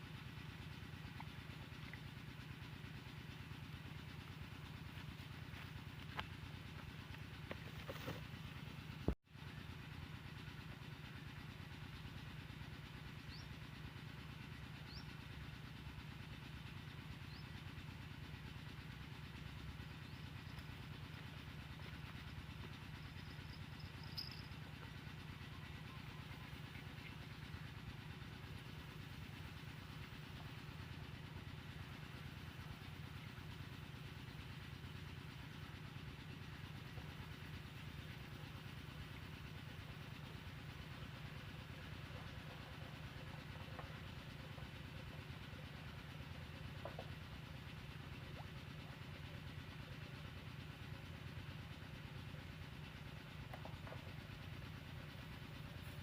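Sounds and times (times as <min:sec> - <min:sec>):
small engine droning: 0:00.0 - 0:56.0.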